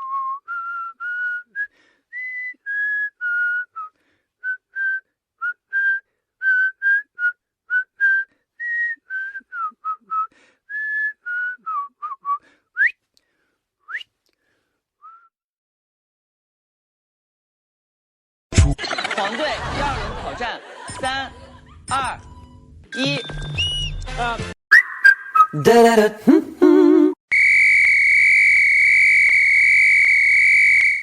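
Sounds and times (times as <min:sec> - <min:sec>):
person whistling a tune: 0:00.0 - 0:13.0, 0:13.9 - 0:14.2, 0:15.0 - 0:15.3, 0:23.0 - 0:24.1, 0:24.7 - 0:27.2.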